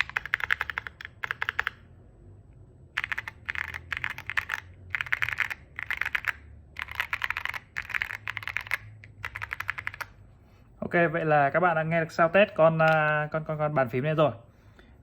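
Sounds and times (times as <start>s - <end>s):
mechanical keyboard typing: 0.0s - 1.8s, 2.9s - 10.2s.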